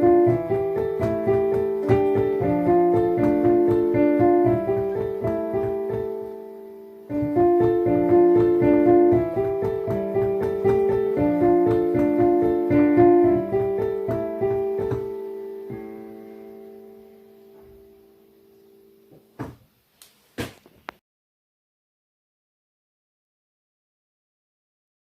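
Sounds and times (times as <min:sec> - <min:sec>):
piano playing melody with chords: 0:00.0 - 0:19.4.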